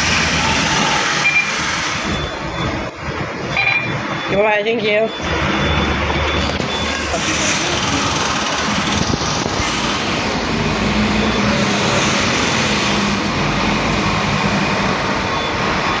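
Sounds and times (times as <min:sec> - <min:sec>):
bus diesel engine accelerating: 0:00.0 - 0:04.3, 0:05.1 - 0:16.0.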